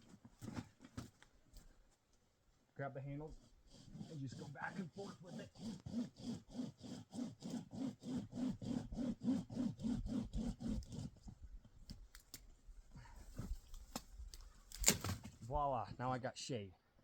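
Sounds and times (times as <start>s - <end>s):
pocket saw rasping through wood: 3.3s - 11.3s.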